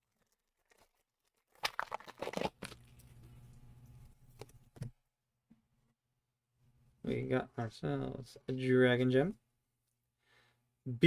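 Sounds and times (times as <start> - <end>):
foil wrapper tearing and crinkling: 0.0 - 3.1.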